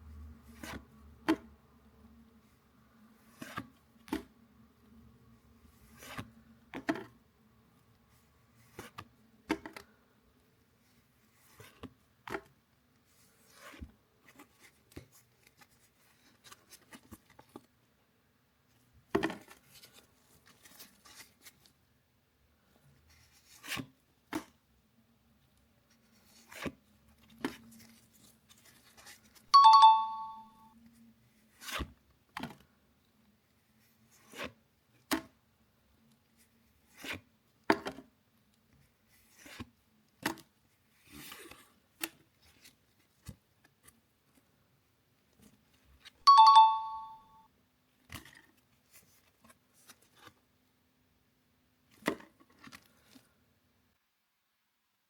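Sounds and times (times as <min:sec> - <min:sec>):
short bright chime: 0:29.6 - 0:30.6, 0:46.3 - 0:47.4.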